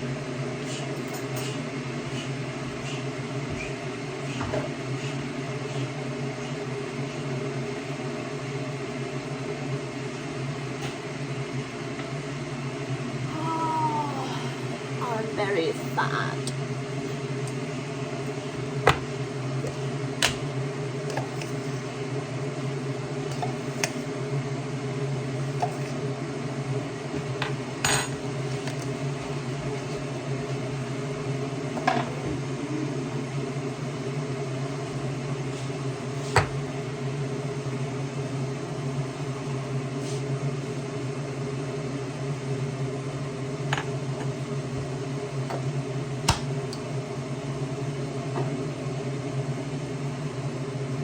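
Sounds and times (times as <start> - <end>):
appliance hum: 0.0 - 51.0.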